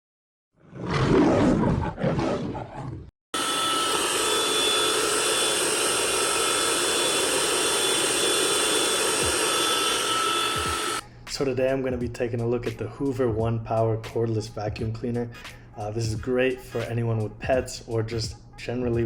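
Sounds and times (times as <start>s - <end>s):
vacuum cleaner running: 3.4s - 11.0s.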